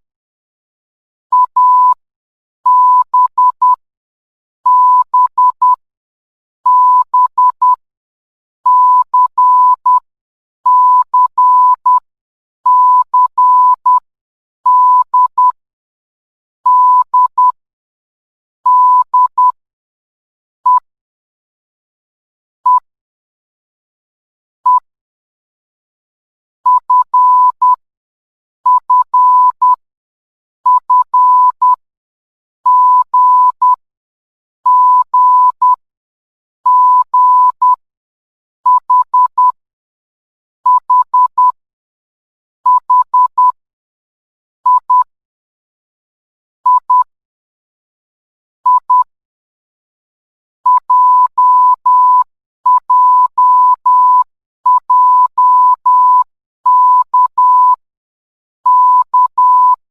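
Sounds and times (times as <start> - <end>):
morse code beeps: 1.3 - 2.0, 2.7 - 3.8, 4.7 - 5.8, 6.7 - 7.8, 8.7 - 10.0, 10.7 - 12.0, 26.7 - 27.8, 28.7 - 29.8, 30.7 - 31.8, 32.7 - 33.8, 34.7 - 35.8, 36.7 - 37.8, 38.7 - 39.6, 40.7 - 41.6, 42.7 - 43.6, 44.7 - 45.1, 46.7 - 47.1, 48.7 - 49.1, 50.7 - 57.8, 58.7 - 59.8.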